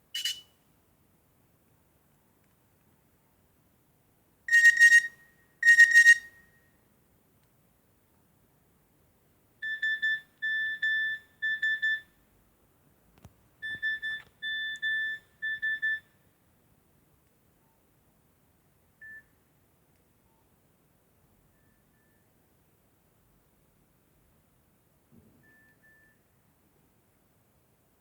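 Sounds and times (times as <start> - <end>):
short ringtone beeps: 0.1 - 0.5, 4.5 - 6.6
phone ringtone buzzy tones: 0.2 - 0.4, 4.5 - 6.3
faint click: 2.4 - 2.9, 19.9 - 20.1.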